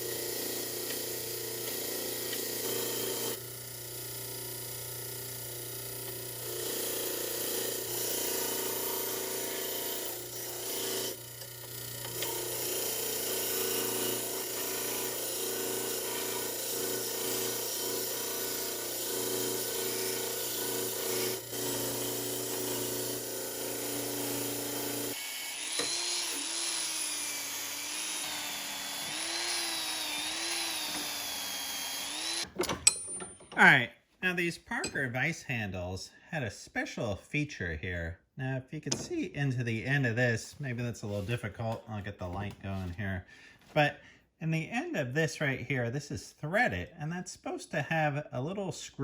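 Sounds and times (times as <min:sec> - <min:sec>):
electric drill running: 0:00.0 - 0:33.0.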